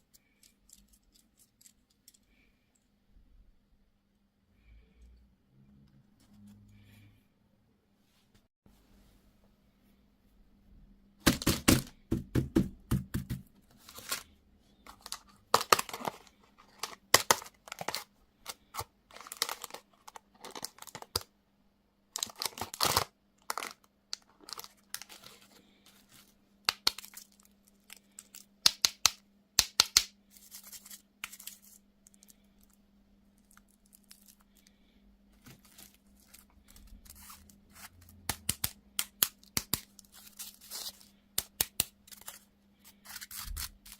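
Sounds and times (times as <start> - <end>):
packaging tearing and crinkling: 14.9 - 21.2, 22.2 - 25.4.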